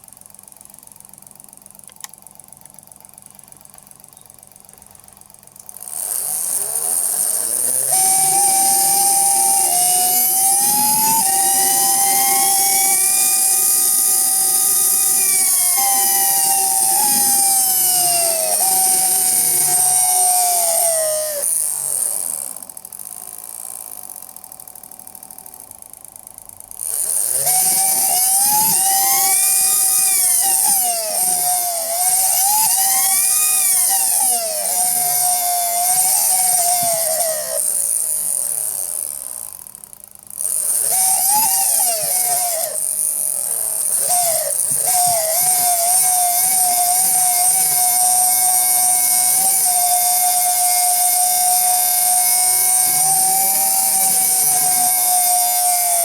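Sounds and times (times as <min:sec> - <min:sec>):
electric motor howling: 0:05.8 - 0:22.6, 0:26.8 - 0:39.4, 0:40.4 - 0:56.0.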